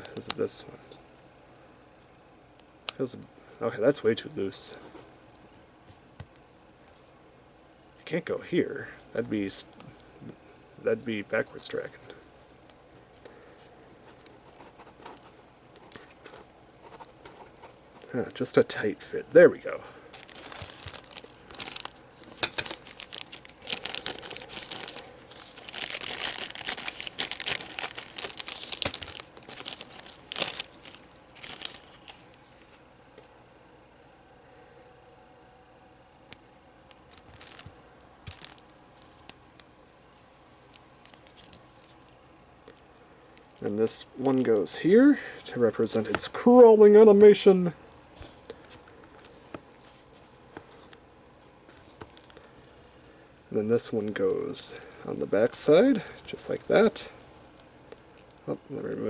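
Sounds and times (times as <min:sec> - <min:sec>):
plastic parts scraping and rustling: 0:20.1 - 0:32.8.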